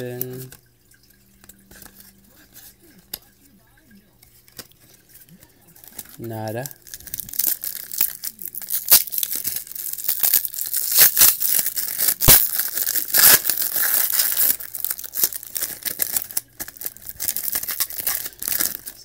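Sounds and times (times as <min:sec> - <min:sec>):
plastic wrapper crinkling and tearing: 0:05.7 - 0:19.0.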